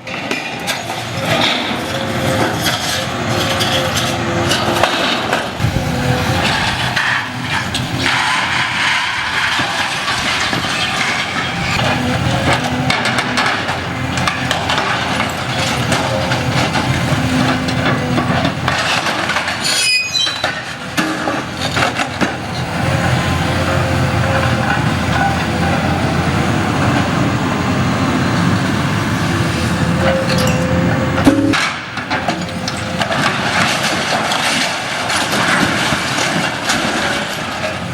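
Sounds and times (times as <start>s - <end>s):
steel tracks rattling and clanking: 0.0s - 27.4s, 28.3s - 37.9s
heavy machine engine rumble: 0.0s - 37.9s
high squeal: 19.7s - 20.5s.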